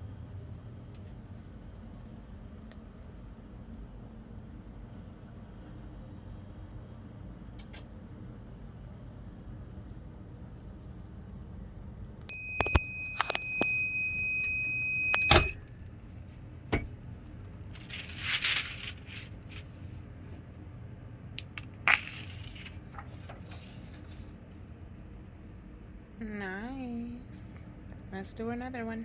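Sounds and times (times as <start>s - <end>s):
high-pitched timer alarm tone: 12.3s - 15.6s
rustling: 17.7s - 20.0s.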